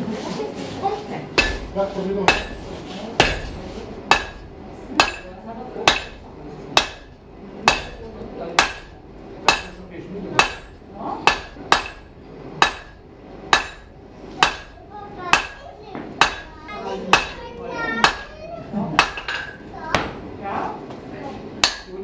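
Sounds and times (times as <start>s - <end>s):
hammer striking iron on anvil: 1.4s - 9.8s, 10.4s - 15.6s, 16.2s - 18.4s, 19.0s - 20.1s, 21.6s - 22.0s.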